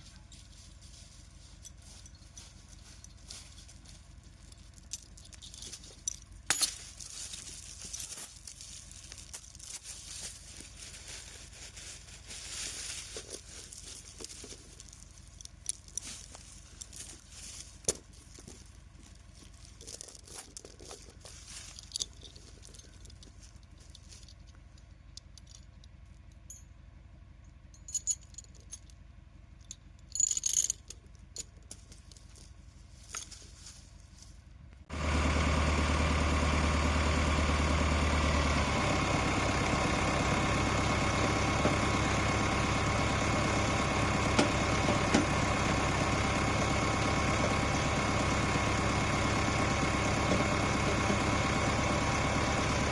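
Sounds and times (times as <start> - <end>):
light metallic clinks and rattles: 0.0 - 34.5
tractor diesel engine idling: 14.0 - 19.8, 22.9 - 27.8, 28.8 - 30.1, 34.4 - 52.9.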